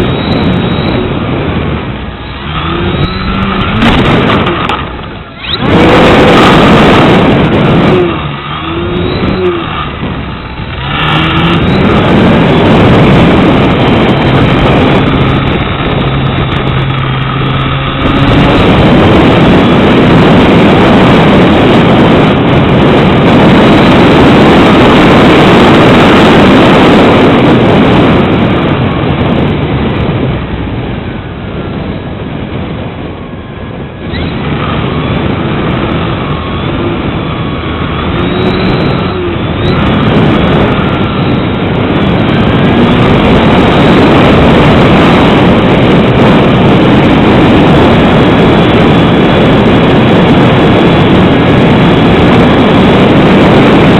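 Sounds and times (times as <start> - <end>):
gusty wind buffeting microphone: 0.0 - 53.9
model plane motor whine: 2.0 - 22.0.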